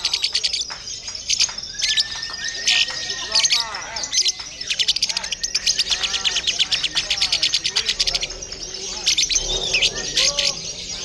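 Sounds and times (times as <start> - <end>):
lovebird chattering trill: 0.0 - 11.0
soft sweeping bird calls: 0.0 - 11.0.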